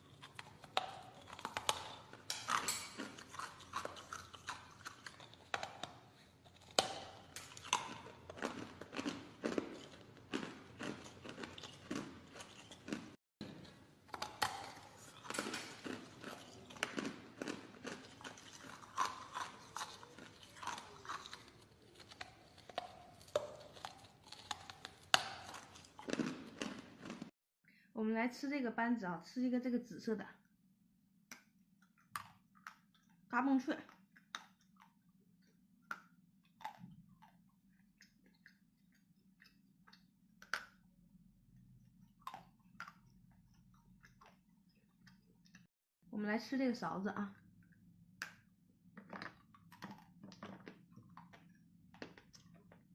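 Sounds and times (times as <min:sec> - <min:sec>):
ice being chewed: 0:00.0 - 0:27.3, 0:36.4 - 0:40.8, 0:41.8 - 0:45.7, 0:49.0 - 0:52.9.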